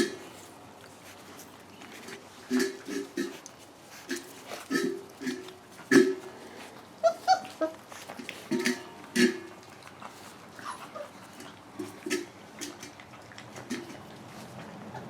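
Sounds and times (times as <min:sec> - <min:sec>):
small scuffling noises: 0:00.0 - 0:15.0
puppies whimpering and squeaking: 0:06.8 - 0:08.9, 0:10.0 - 0:12.0, 0:14.3 - 0:15.0.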